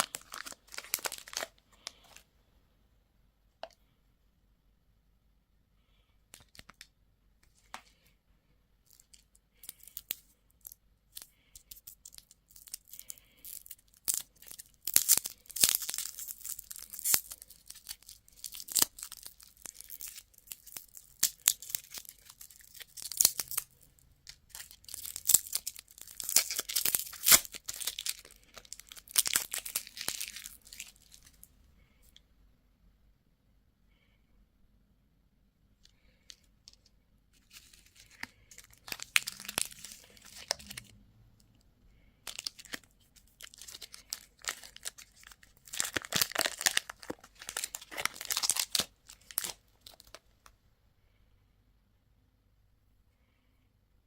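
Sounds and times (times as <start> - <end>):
wrapper tearing and crinkling: 0.0 - 2.2, 11.2 - 31.4, 37.4 - 40.9, 42.3 - 50.2.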